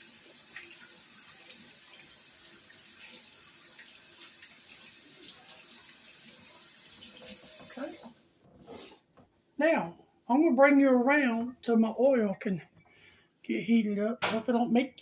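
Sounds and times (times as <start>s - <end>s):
tap running into a sink: 6.9s - 8.2s.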